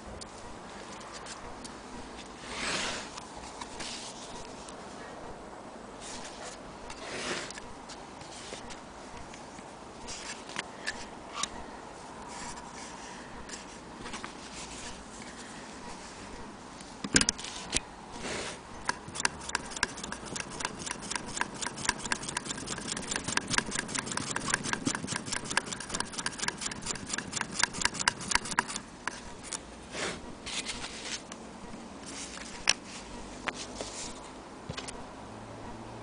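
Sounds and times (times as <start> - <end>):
sewing machine clicking: 18.8 - 29.2.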